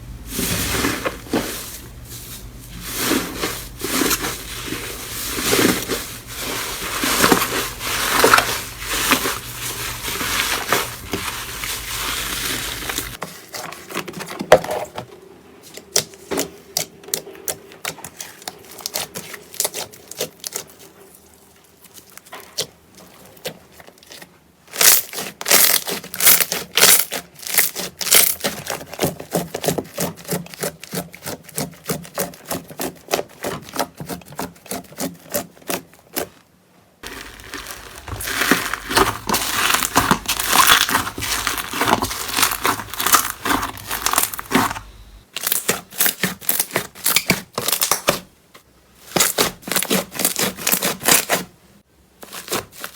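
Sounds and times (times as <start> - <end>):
slime crackling and popping: 37.0 - 48.1.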